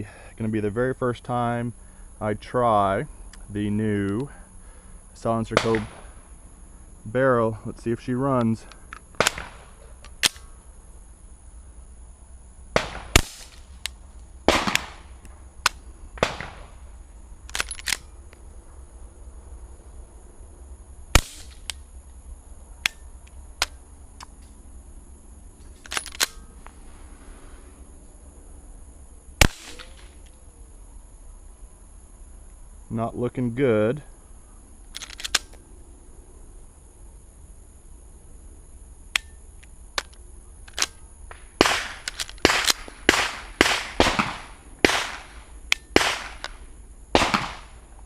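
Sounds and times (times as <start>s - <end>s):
pistol shots: 5.6s - 6.1s, 9.2s - 10.5s, 12.8s - 13.7s, 14.5s - 16.7s, 21.2s - 21.7s, 29.4s - 30.2s, 41.3s - 47.8s.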